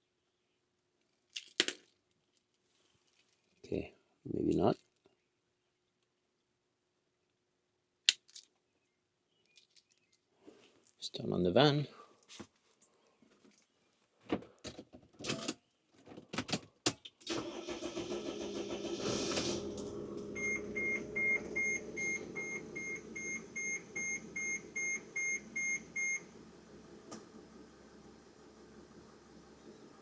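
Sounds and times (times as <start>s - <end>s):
engine cranking and idling: 17.3s - 30.0s.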